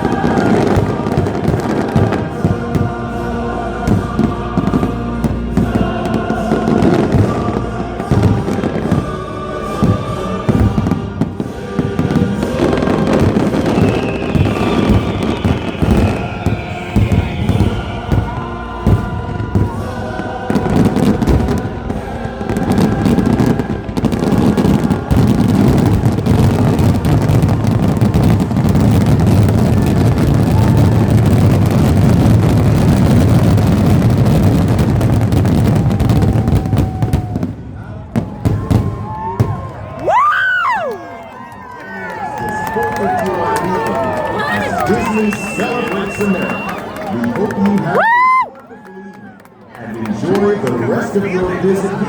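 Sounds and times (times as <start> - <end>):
orchestral music over loudspeakers: 0.0 - 30.3
fireworks bangs and crackles: 0.0 - 52.0.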